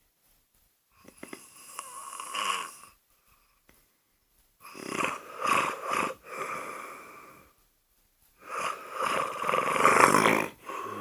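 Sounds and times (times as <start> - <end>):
child snoring: 1.2 - 3.0, 4.6 - 7.5, 8.4 - 11.0.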